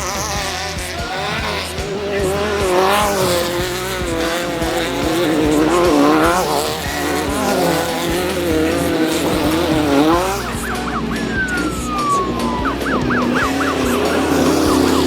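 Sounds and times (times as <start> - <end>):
race vehicle engine revving: 0.0 - 15.0
long falling tone: 3.9 - 15.0
quick rising whistles: 9.9 - 15.0.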